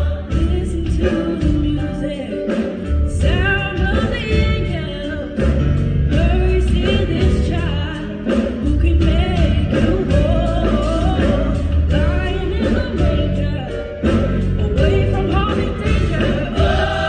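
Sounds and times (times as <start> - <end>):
band with strong bass: 0.0 - 17.0
gospel choir and soloist singing: 12.5 - 17.0.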